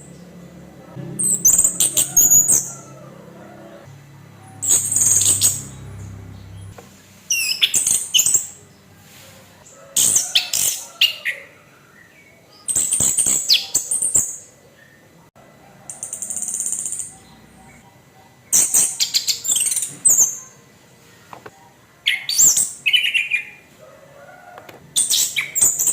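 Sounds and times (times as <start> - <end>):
thrush singing: 0.0 - 6.8
buzzy rattling bird trill: 4.4 - 6.7.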